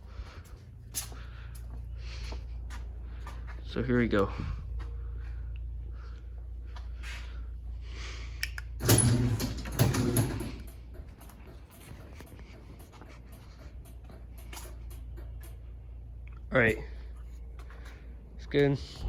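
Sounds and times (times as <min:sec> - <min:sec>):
garage door motor hum: 0:00.0 - 0:19.0
garage door rattling clatter: 0:08.7 - 0:19.0.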